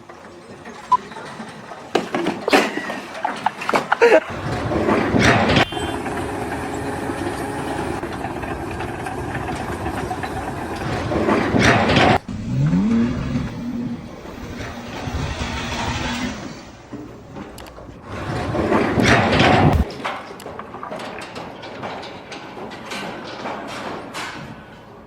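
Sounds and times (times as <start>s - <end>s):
engine running: 4.3s - 19.9s.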